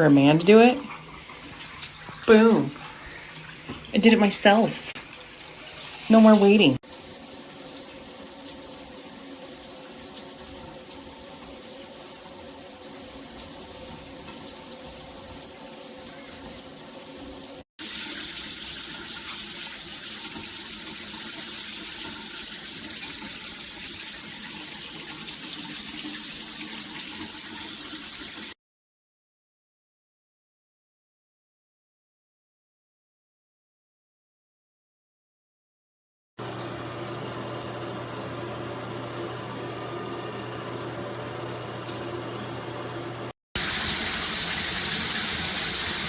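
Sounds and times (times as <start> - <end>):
shower water spraying: 43.6 - 46.0.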